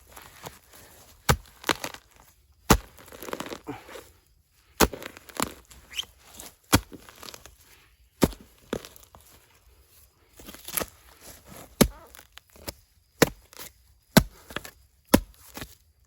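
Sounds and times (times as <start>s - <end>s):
roots tearing and scraping: 0.0s - 4.2s, 4.8s - 9.5s, 10.4s - 15.8s
shovel striking into soil: 1.2s - 4.0s, 4.8s - 7.4s, 8.2s - 8.8s, 11.6s - 15.8s.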